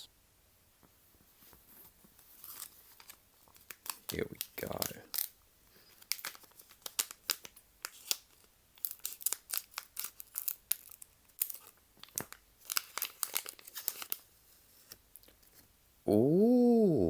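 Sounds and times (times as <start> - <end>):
wrapper crinkling: 2.2 - 15.6
scissors cutting wrapper: 6.0 - 14.2.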